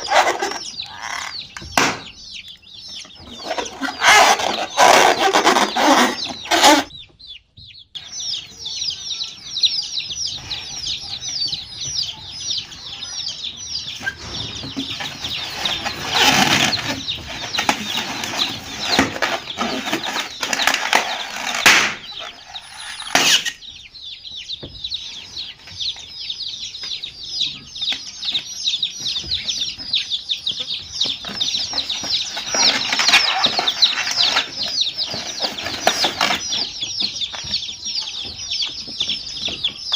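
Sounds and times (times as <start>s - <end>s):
baby chicks peeping: 0.0s - 39.9s.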